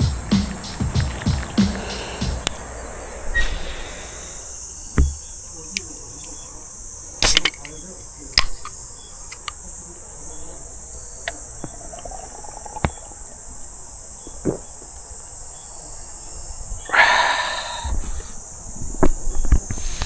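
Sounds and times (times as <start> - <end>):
short rush of noise: 0.0 - 5.5
insects chorus: 0.0 - 20.0
faint knocks: 5.0 - 5.3.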